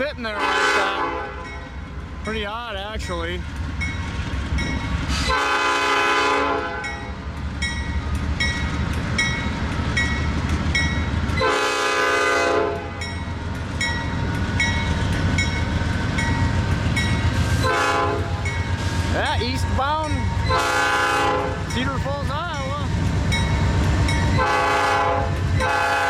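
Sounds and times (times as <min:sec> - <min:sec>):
locomotive horn blasts: 0:00.3 - 0:01.6, 0:05.2 - 0:07.1, 0:11.4 - 0:13.1, 0:17.6 - 0:18.5, 0:20.5 - 0:21.7, 0:24.4 - 0:26.0.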